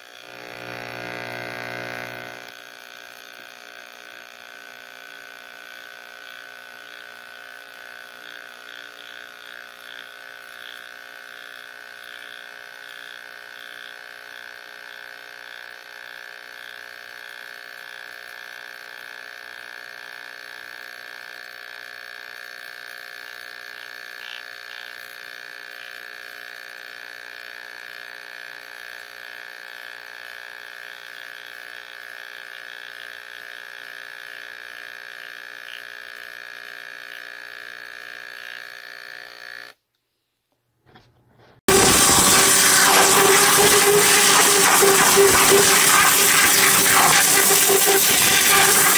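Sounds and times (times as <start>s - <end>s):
pressure washer whining: 41.7s - 48.9s.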